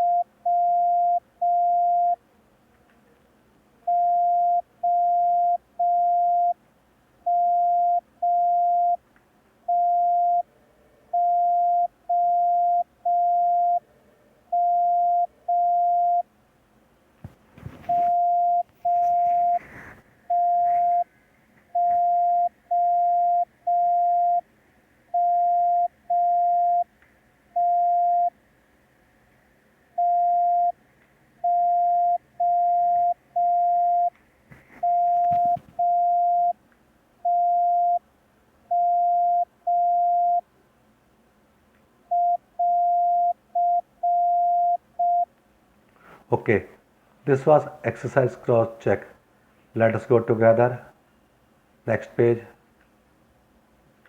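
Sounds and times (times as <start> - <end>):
morse code beeps: 0.0 - 2.2, 3.9 - 6.6, 7.3 - 9.0, 9.7 - 10.4, 11.2 - 13.8, 14.6 - 16.2, 17.8 - 19.7, 20.3 - 21.1, 21.7 - 24.4, 25.2 - 26.9, 27.6 - 28.3, 30.0 - 30.8, 31.4 - 34.1, 34.8 - 36.6, 37.3 - 38.0, 38.7 - 40.4, 42.1 - 45.3.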